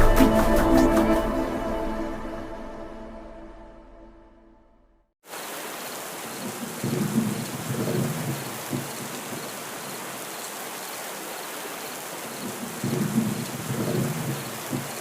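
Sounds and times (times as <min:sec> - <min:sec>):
heavy rain hissing: 0:05.2 - 0:15.0
thunder rumbling: 0:06.3 - 0:09.6, 0:12.3 - 0:15.0.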